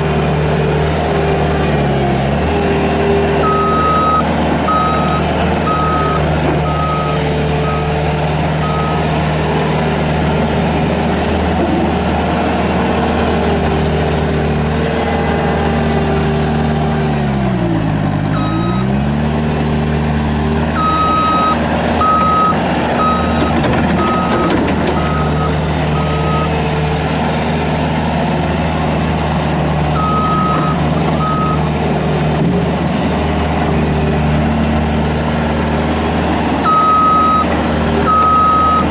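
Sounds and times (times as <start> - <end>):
diesel engine running: 0.0 - 38.9
backup alarm beeping: 20.8 - 26.5, 38.1 - 38.9.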